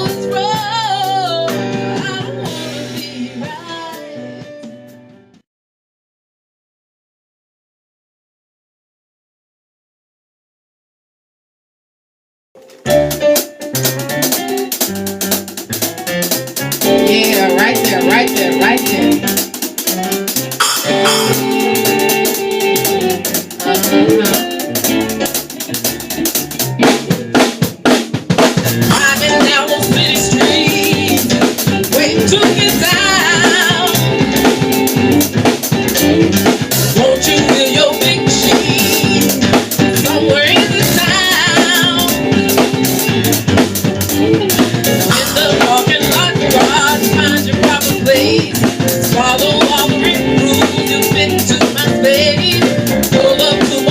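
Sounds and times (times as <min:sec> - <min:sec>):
soul band music: 0:00.0 - 0:05.4, 0:12.6 - 0:53.9
drum kit hits: 0:12.9 - 0:53.9
wavering melodic lead: 0:20.6 - 0:26.9.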